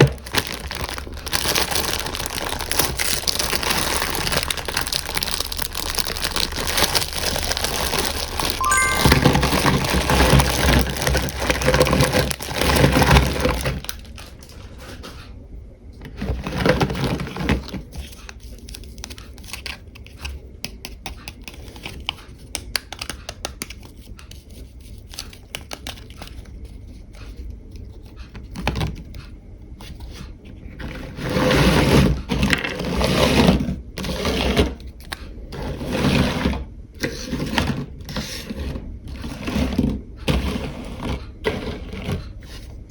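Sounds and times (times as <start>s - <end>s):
plastic packaging crinkling: 0.0s - 14.6s.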